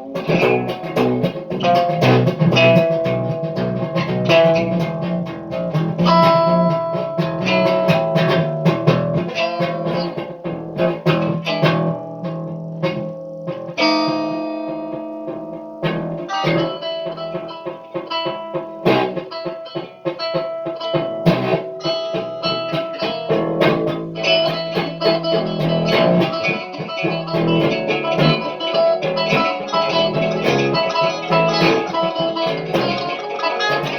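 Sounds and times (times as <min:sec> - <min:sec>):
guitar plucked notes: 0:00.0 - 0:33.9
ringing guitar chord: 0:11.2 - 0:33.9.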